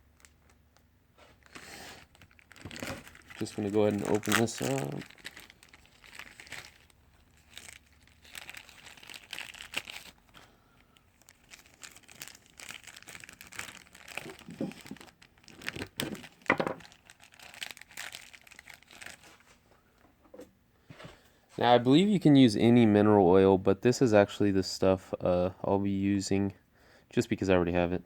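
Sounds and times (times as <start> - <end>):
packaging crinkling and tearing: 0.0 - 19.6.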